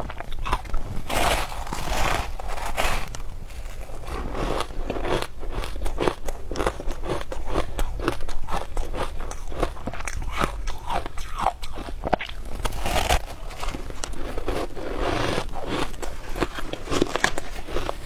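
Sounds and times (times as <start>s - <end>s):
person crunching ice: 0.0s - 18.0s.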